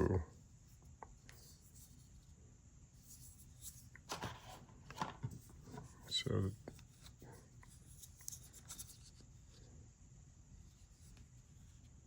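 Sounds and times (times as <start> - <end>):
faint clicks and scraping of packaging: 3.1 - 9.7.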